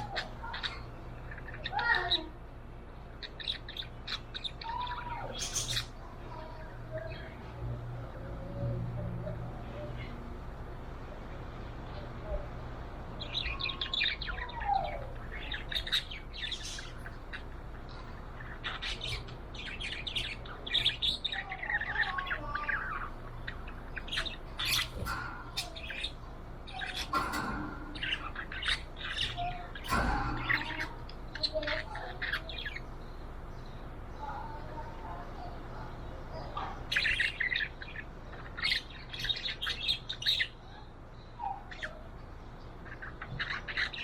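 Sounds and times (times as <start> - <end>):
budgie chirping and chattering: 3.2 - 7.1, 13.1 - 44.0.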